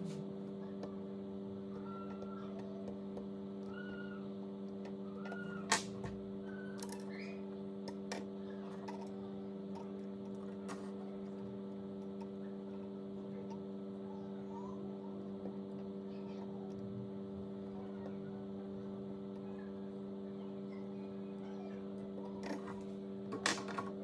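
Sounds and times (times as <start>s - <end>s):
low electrical hum: 0.0s - 24.0s.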